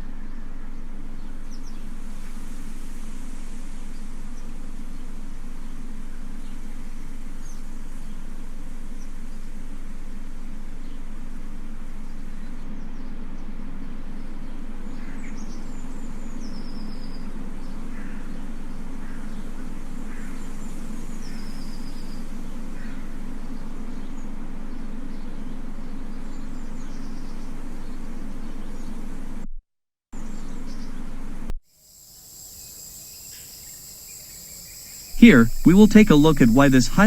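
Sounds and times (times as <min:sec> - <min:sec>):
steady low drone: 0:00.0 - 0:26.4, 0:35.2 - 0:37.0
small birds chirping: 0:33.6 - 0:37.0.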